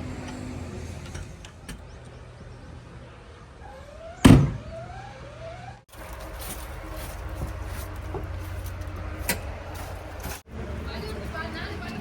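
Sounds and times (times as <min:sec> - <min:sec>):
backhoe loader engine running: 0:05.9 - 0:12.0.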